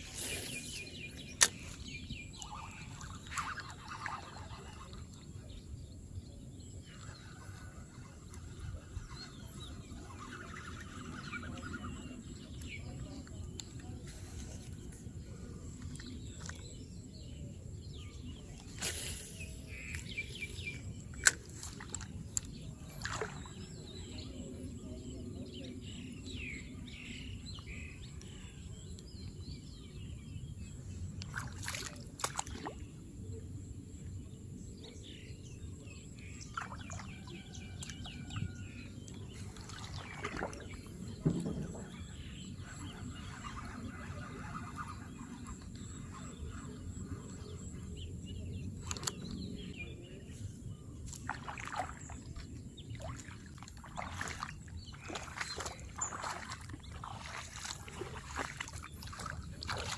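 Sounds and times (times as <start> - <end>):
faint bird calls: 35.8 - 59.9.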